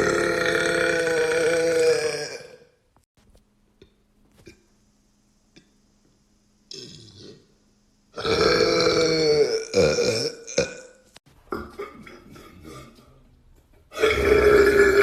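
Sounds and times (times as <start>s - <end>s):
man belching loudly: 0.0s - 2.7s, 8.2s - 13.1s, 14.0s - 15.0s.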